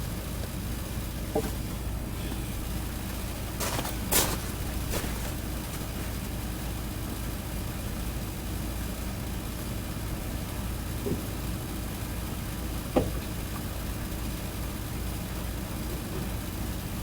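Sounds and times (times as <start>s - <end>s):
low mechanical drone: 0.0s - 8.2s.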